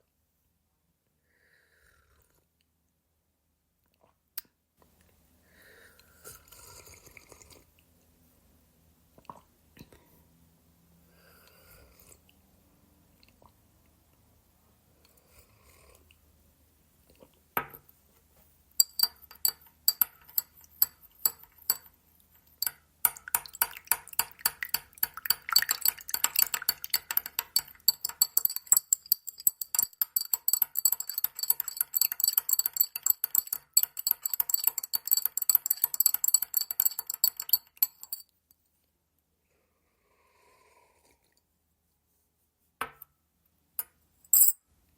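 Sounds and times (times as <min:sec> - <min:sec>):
teaspoon clinking in a cup: 0:18.8 - 0:38.3.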